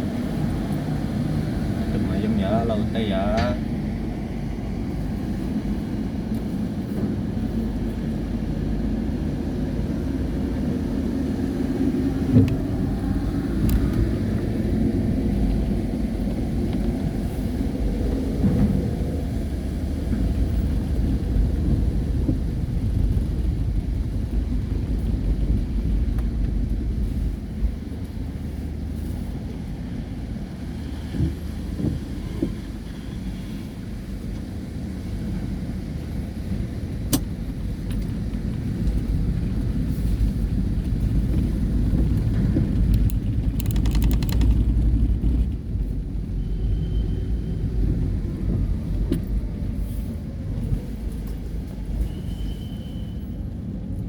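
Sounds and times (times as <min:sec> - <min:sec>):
car engine rumble: 0:00.0 - 0:33.1, 0:34.0 - 0:52.1
sharp click: 0:43.0 - 0:44.6.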